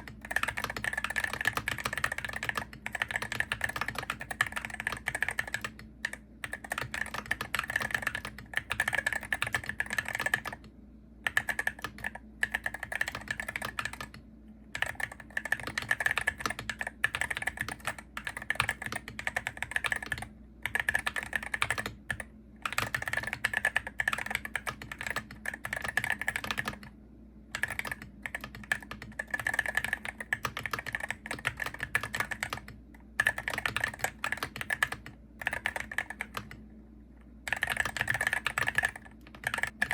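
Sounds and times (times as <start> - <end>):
keyboard keystroke clicks: 27.6 - 36.6.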